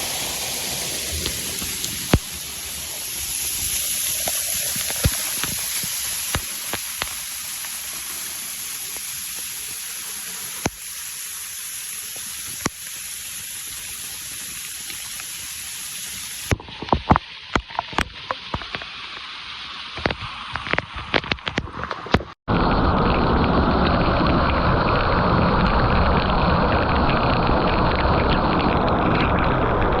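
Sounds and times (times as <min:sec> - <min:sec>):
waterfall rushing: 0:00.0 - 0:16.5.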